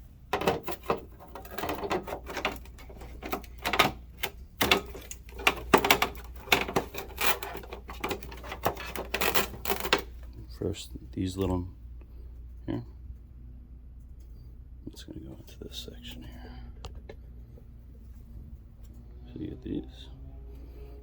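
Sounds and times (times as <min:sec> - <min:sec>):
scooter parts clicking and knocking: 0:00.0 - 0:10.2.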